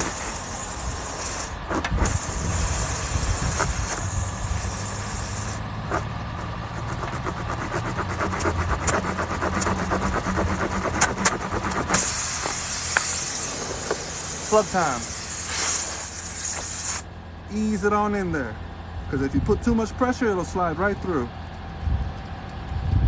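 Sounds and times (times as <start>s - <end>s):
air hissing from tire: 0.0s - 7.5s, 8.3s - 17.1s
engine hum: 0.0s - 23.0s
repair tool scraping clicks: 10.8s - 14.4s.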